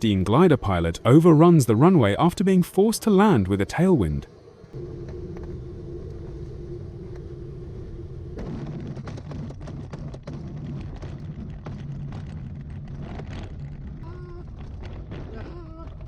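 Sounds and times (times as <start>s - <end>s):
steady hum: 0.0s - 9.0s
glider wheel rumbling and rattling: 4.5s - 16.0s
wind noise: 4.5s - 16.0s.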